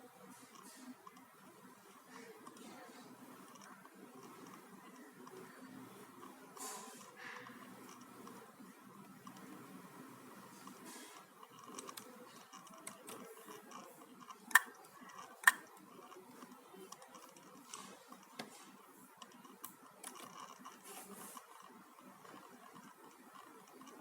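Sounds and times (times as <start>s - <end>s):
laptop clicking: 10.6s - 18.6s.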